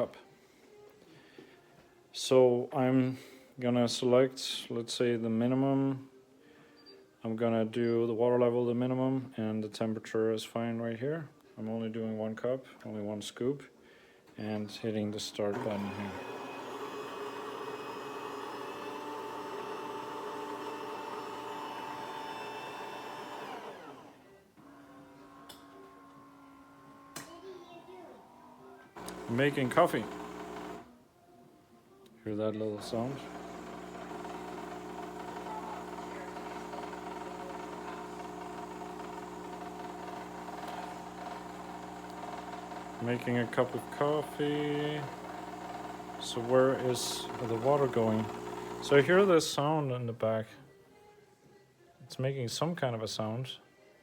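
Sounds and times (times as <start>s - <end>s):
espresso machine motor whirring: 15.5s - 27.1s, 29.0s - 30.9s, 32.8s - 49.5s.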